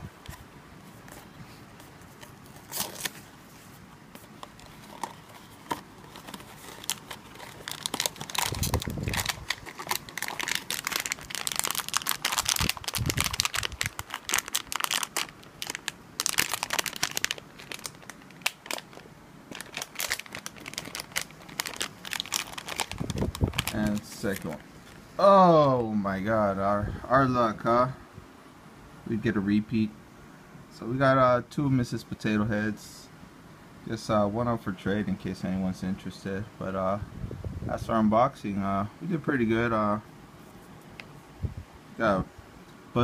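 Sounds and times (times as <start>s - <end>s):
foil wrapper crinkling and tearing: 4.4s - 24.7s.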